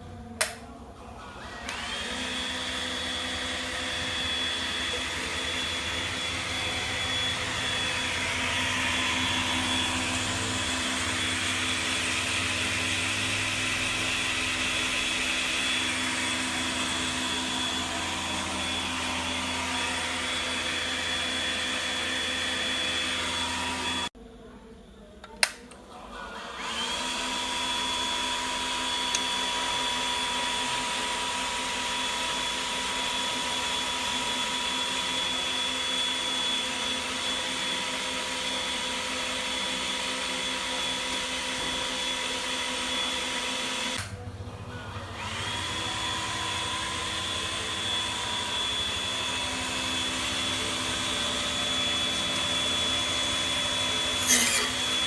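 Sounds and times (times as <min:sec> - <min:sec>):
machine motor whining: 0:01.4 - 0:24.1, 0:45.1 - 0:55.0.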